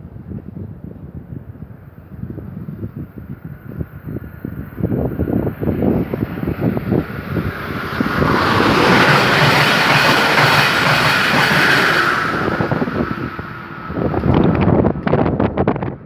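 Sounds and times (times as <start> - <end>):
wind buffeting microphone: 0.0 - 16.0
train wheels rattling on rail: 4.2 - 15.5.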